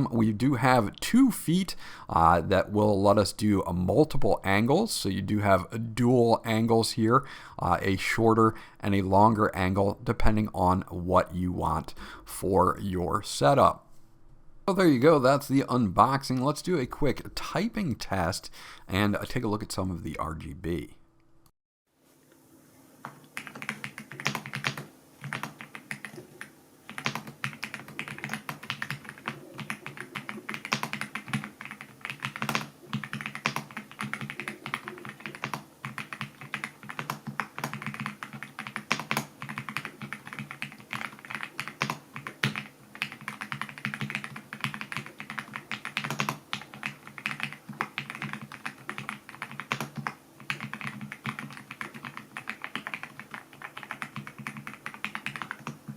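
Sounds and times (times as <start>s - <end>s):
mechanical keyboard typing: 23.4s - 55.9s.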